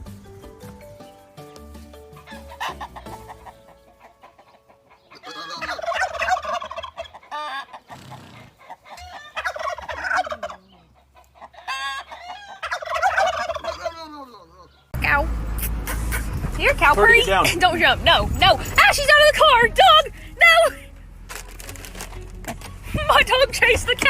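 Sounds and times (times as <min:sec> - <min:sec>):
musical notes: 0:00.0 - 0:06.8
fowl gobbling: 0:02.2 - 0:14.0.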